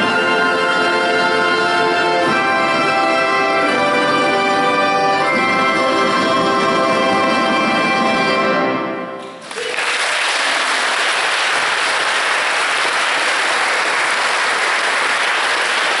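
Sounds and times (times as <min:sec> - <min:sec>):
audience applause: 0:09.3 - 0:16.0.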